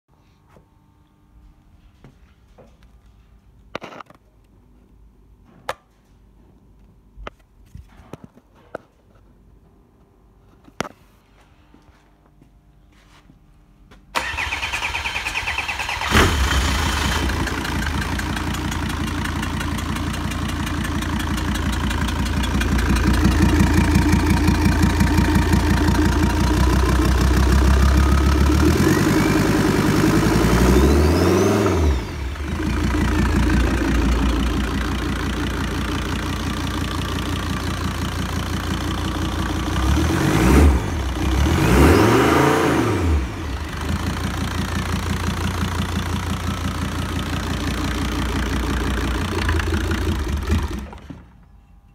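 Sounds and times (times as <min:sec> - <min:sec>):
diesel engine idling and revving: 0:14.2 - 0:51.1.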